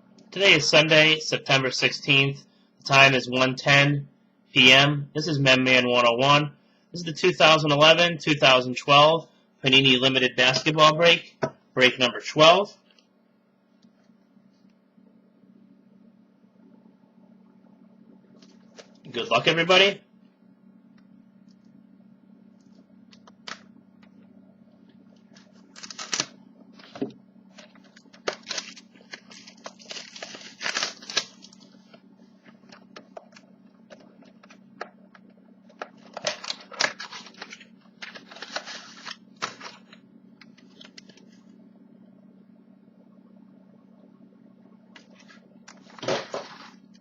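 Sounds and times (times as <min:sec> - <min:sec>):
steady low hum: 0:00.0 - 0:47.0
wrapper tearing and crinkling: 0:25.7 - 0:26.3, 0:28.1 - 0:31.7, 0:36.1 - 0:39.8.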